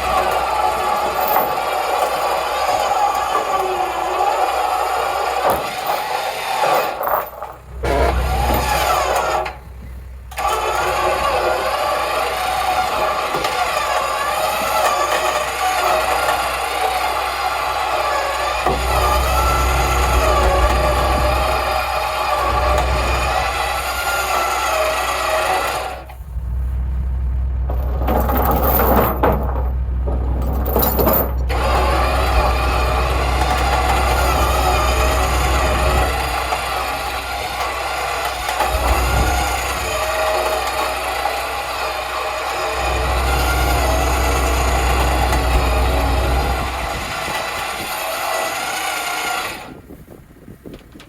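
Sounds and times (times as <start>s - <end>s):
metallic clanking and rattling: 0.0s - 49.7s
engine starting and running: 0.0s - 51.0s.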